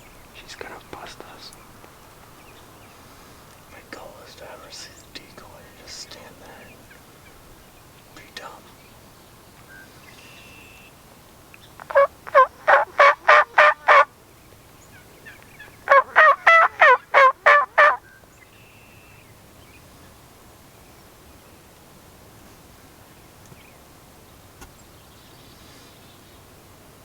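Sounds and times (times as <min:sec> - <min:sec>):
turkey yelps: 0:11.8 - 0:14.1, 0:15.2 - 0:18.0.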